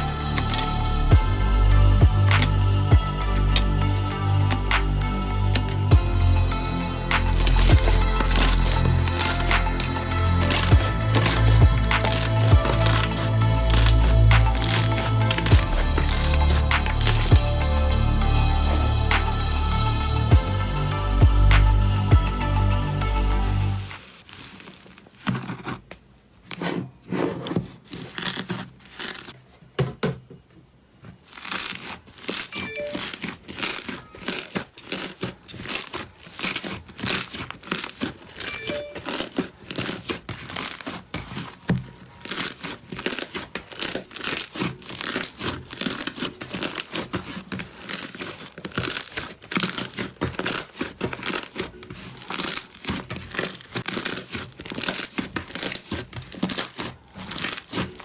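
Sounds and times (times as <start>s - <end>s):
slime crackling and popping: 0.0s - 18.0s, 27.8s - 29.4s, 31.2s - 58.0s.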